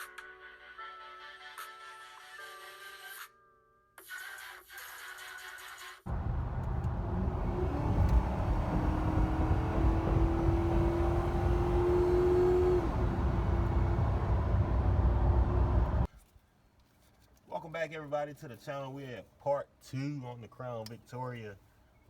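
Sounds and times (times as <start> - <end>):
car engine accelerating: 6.1 - 16.1.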